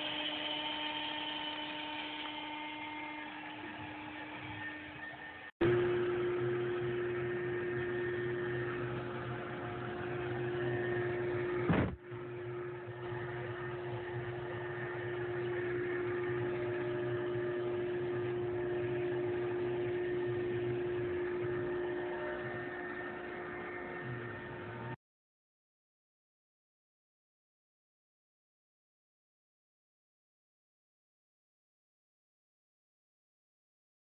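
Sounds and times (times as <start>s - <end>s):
low machine hum: 0.0s - 25.0s
router spindle high whine: 0.0s - 25.0s.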